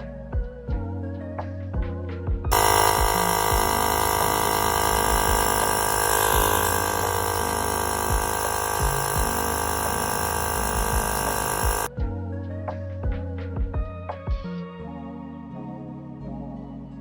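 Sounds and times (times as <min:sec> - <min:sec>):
air compressor running: 0:02.5 - 0:11.9.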